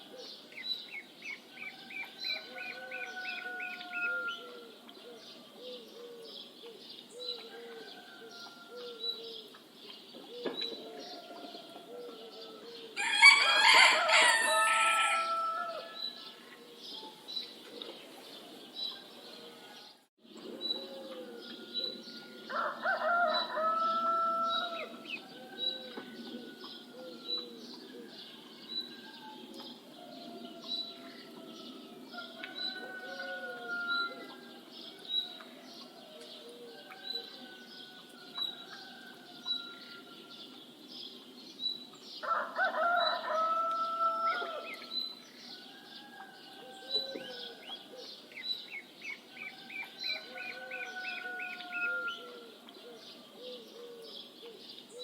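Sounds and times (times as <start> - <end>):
rooster crowing: 1.7 - 4.8, 10.9 - 16.4, 20.9 - 27.5, 28.3 - 34.7, 42.2 - 44.9, 49.4 - 52.6.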